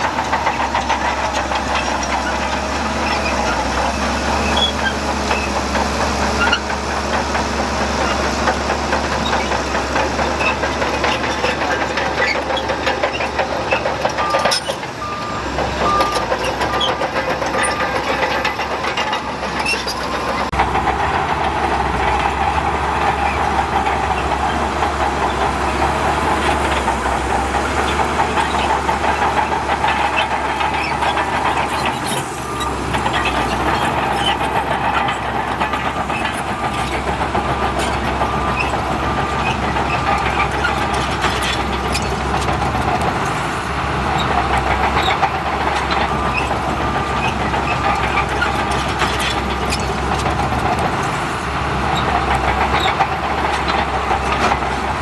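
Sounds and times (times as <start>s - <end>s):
heavy diesel machinery running: 0.0s - 55.0s
reversing alarm beeping: 14.2s - 20.5s, 32.0s - 40.3s.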